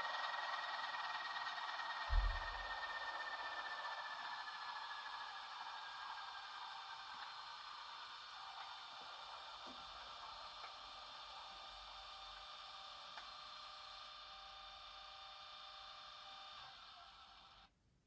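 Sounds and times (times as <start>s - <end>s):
high whine sliding downward: 2.0s - 3.7s.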